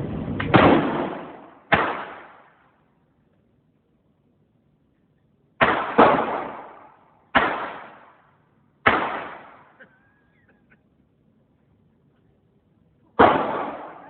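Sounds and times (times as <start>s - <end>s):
gunshots with echo: 0.3s - 2.6s, 5.6s - 8.2s, 8.8s - 9.8s, 13.2s - 14.0s.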